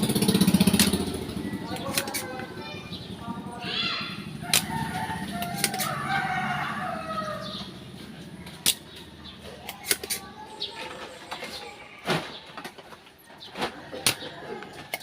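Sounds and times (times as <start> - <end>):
sharp clicks: 0.7 - 1.1, 4.5 - 4.7
rooster crowing: 4.4 - 7.6.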